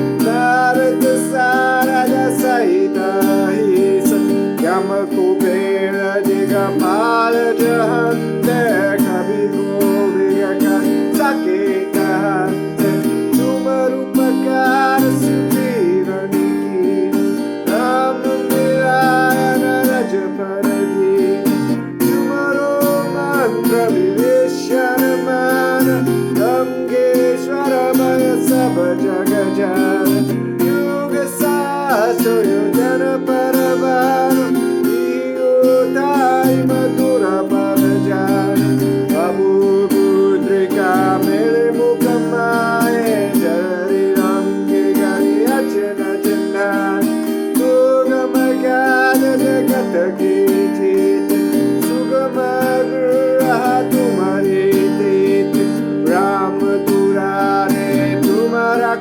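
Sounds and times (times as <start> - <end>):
strummed acoustic guitar: 0.0 - 59.0.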